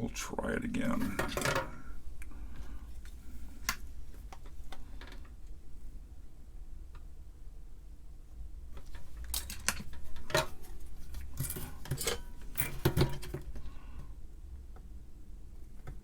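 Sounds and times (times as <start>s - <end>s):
low steady hum: 0.0s - 16.0s
metal tools clinking: 0.9s - 1.9s, 11.2s - 13.4s.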